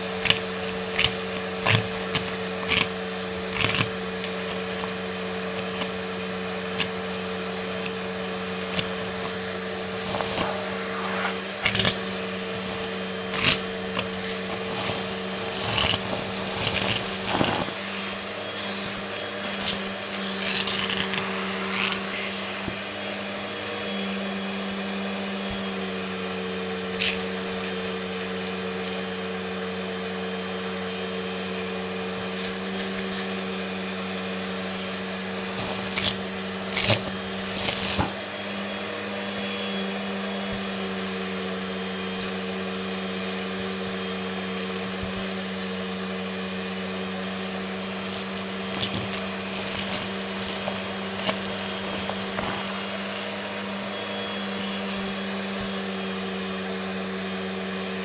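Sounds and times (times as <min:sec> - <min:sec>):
debris clicking in vacuum: 0:00.0 - 0:22.9, 0:24.8 - 0:29.5, 0:32.2 - 0:38.3, 0:40.4 - 0:42.5, 0:47.7 - 0:56.6
vacuum cleaner running: 0:00.0 - 0:58.0.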